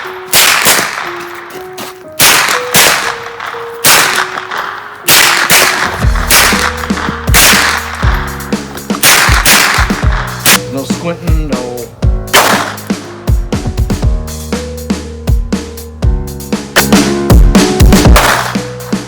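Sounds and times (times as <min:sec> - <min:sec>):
echoing gunshots: 0:00.0 - 0:01.6, 0:02.2 - 0:10.6, 0:12.3 - 0:13.0, 0:18.1 - 0:18.8
background music with held notes: 0:00.0 - 0:19.0
bass line: 0:05.9 - 0:19.0.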